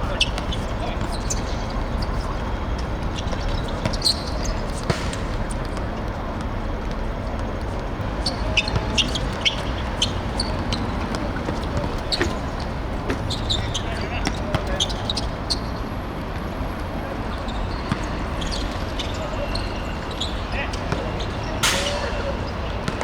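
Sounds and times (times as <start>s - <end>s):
shoe squeaks: 0.0s - 5.7s, 8.0s - 15.9s, 17.2s - 23.0s
steady background noise: 0.0s - 23.0s
ball kicks and bounces: 3.1s - 7.8s, 20.9s - 22.2s.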